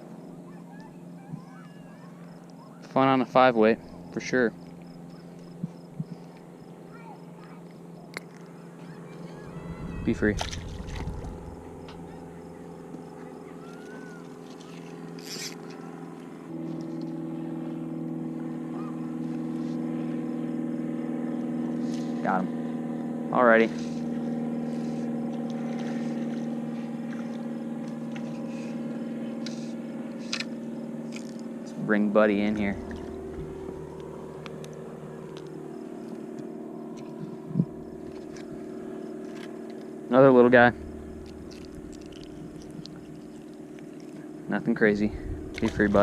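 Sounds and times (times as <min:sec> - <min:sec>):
motor engine humming: 0:00.0 - 0:46.0.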